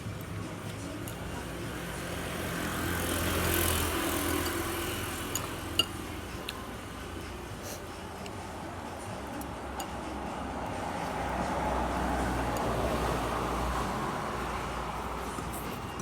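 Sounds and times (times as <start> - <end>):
road noise: 0.0 - 16.0
vehicle engine passing by: 1.6 - 5.7, 10.6 - 15.9.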